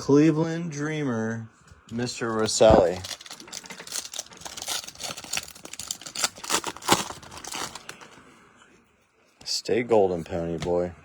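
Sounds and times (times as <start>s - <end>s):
cards and foil packaging crinkling: 1.9s - 8.3s.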